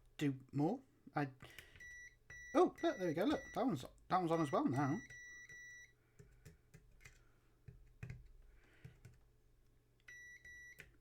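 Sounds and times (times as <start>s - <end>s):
multimeter continuity beep: 1.8s - 6.0s, 10.1s - 10.9s.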